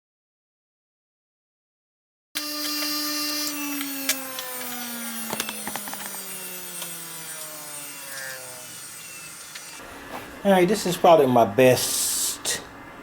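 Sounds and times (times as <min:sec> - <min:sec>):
electric grinder winding down: 0:02.4 - 0:09.8.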